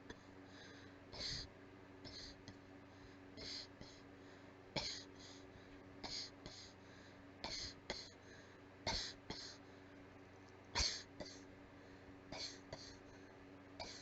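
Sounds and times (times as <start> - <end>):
weak breathy coughs: 4.8 - 5.1, 6.1 - 6.7, 7.5 - 8.2, 8.9 - 9.6, 10.8 - 11.5, 12.4 - 13.0, 13.8 - 14.0.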